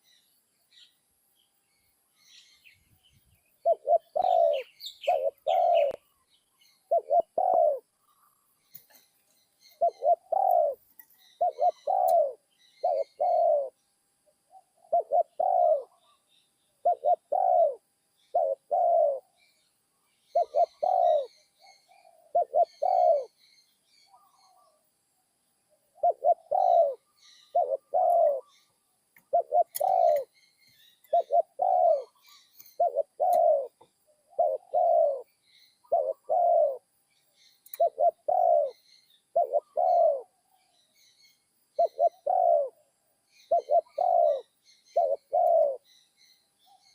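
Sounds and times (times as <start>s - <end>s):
small birds chirping: 0.0s - 46.9s
dove cooing: 3.6s - 6.1s, 6.8s - 9.1s, 9.7s - 13.8s, 14.5s - 16.2s, 16.8s - 19.4s, 20.3s - 23.4s, 25.9s - 30.3s, 31.0s - 36.9s, 37.7s - 40.5s, 41.8s - 42.8s, 43.4s - 45.9s.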